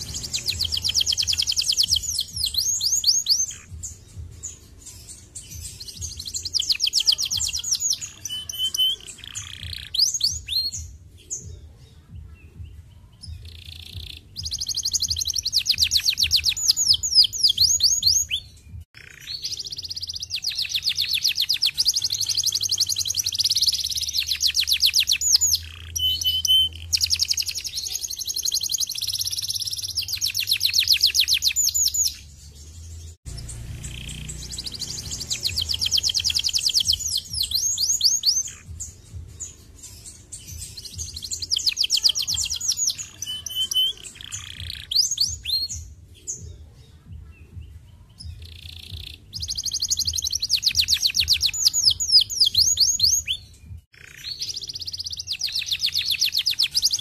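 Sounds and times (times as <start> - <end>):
canary singing trills: 0.0 - 57.0.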